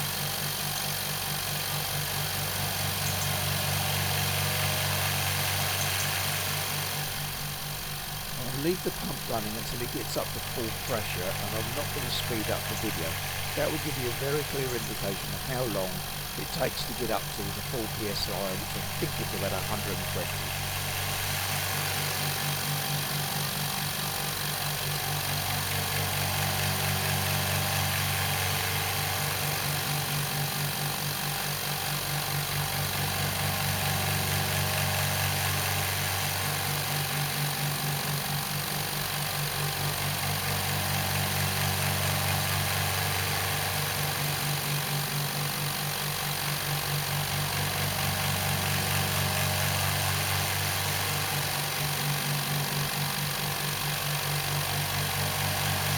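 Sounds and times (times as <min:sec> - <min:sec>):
air compressor humming: 0:07.0 - 0:22.4.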